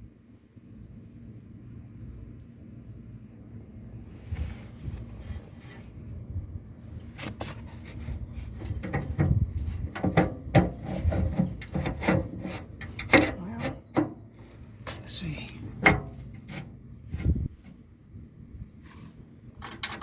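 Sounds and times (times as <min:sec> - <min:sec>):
metal parts knocking and clicking: 0:19.6 - 0:20.0.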